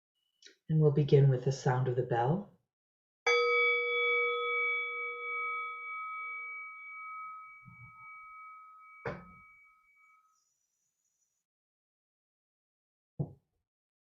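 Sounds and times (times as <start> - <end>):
meditation bell ringing: 3.3 - 10.6
soft knock: 9.0 - 9.4.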